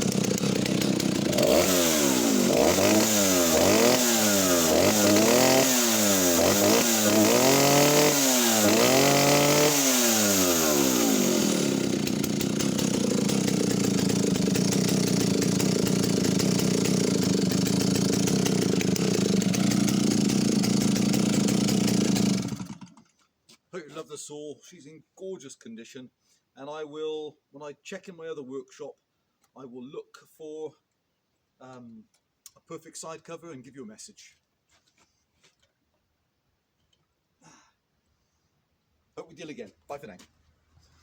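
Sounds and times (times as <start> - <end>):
chainsaw revving and idling: 0.0 - 23.1.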